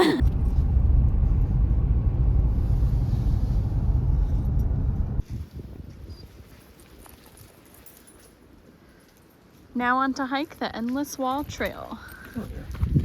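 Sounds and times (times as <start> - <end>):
loud low rumble: 0.0 - 5.2.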